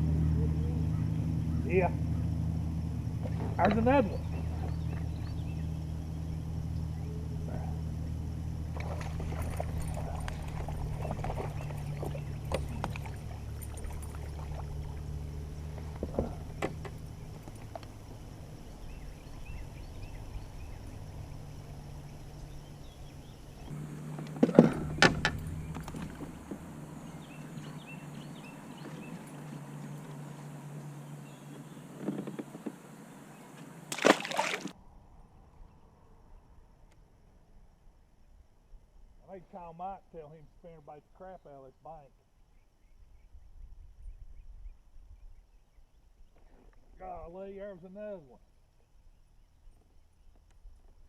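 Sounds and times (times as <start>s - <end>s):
rumble of river water and wind: 0.0s - 35.2s.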